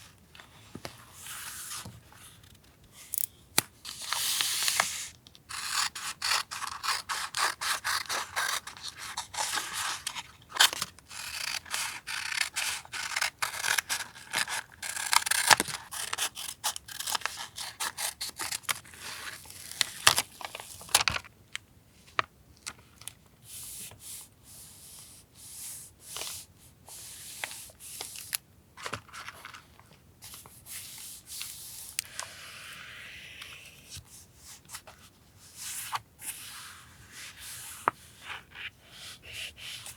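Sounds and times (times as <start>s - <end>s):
scissors snipping paper: 5.5s - 18.9s.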